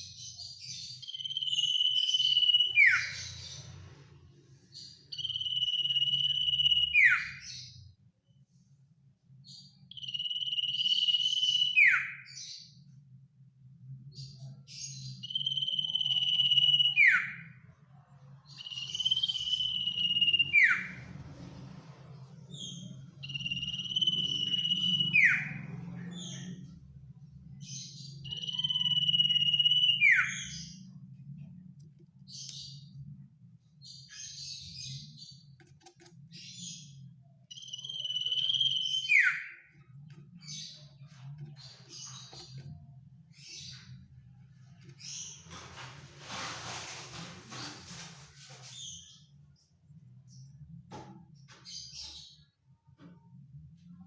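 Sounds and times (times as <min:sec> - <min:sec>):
bird whistled song: 0:00.1 - 0:03.6, 0:04.7 - 0:07.8, 0:09.5 - 0:12.6, 0:14.8 - 0:17.6, 0:18.5 - 0:21.0, 0:22.5 - 0:26.5, 0:27.6 - 0:31.0, 0:36.3 - 0:40.9
high bird chirps: 0:00.1 - 0:03.7, 0:04.7 - 0:07.7, 0:09.8 - 0:12.6, 0:15.0 - 0:17.6, 0:18.5 - 0:21.0, 0:22.5 - 0:26.6, 0:27.6 - 0:31.1, 0:33.8 - 0:45.5.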